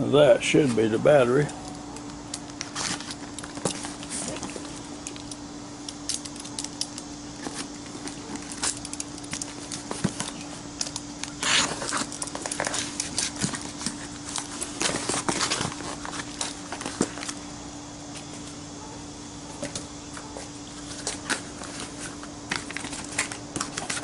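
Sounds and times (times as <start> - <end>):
faint steady hum: 0.0 - 24.0
packaging rustling and crinkling: 2.6 - 4.9, 11.2 - 17.4, 20.8 - 24.0.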